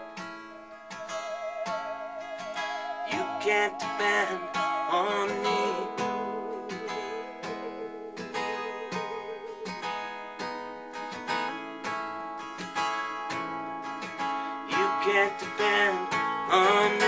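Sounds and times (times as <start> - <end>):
acoustic guitar strumming: 0.0 - 17.0
wordless voice with vibrato: 2.4 - 7.2.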